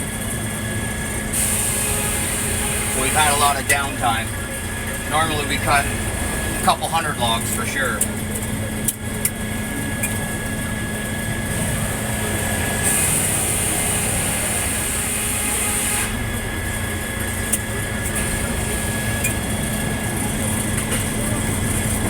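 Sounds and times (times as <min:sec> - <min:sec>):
circular sawmill running: 0:00.0 - 0:22.0
saw blade cutting log: 0:11.7 - 0:16.2.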